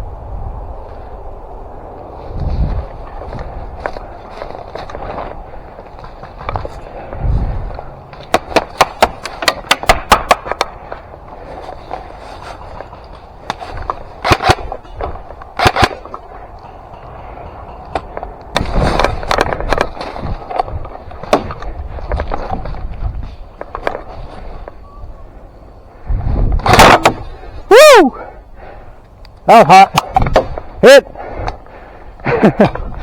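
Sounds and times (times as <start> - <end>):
movement: 2.0 - 27.7
airsoft gun shots: 15.6 - 16.2.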